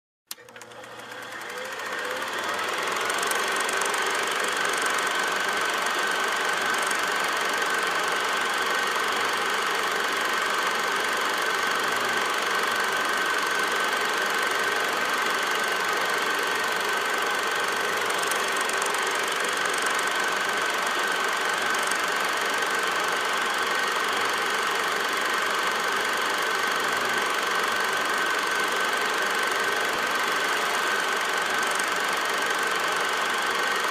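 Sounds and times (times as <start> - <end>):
projector switch click: 0.3 - 4.1
projector motor running: 0.3 - 33.9.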